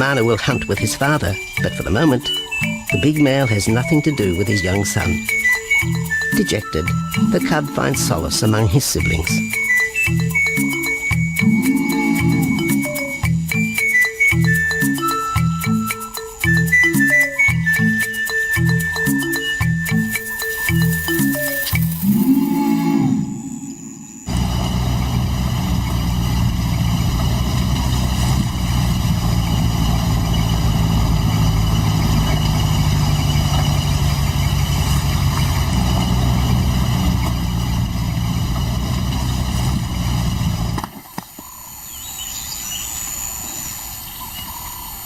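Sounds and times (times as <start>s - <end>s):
vehicle engine idling: 23.2s - 40.8s.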